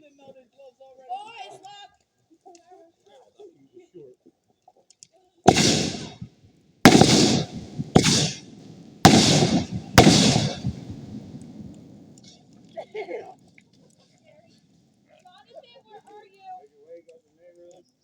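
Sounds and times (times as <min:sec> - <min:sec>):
fireworks exploding: 0:05.5 - 0:12.7.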